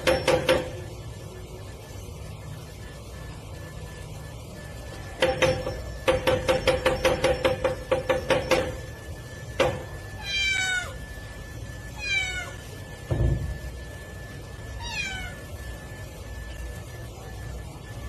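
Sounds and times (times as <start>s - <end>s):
knocks: 5.2s - 8.8s
cat meowing: 10.2s - 11.0s, 12.0s - 12.6s, 14.8s - 15.5s.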